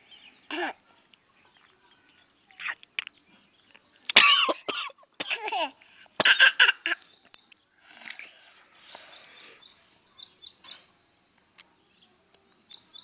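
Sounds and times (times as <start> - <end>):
baby coughing and spluttering: 4.1 - 7.0.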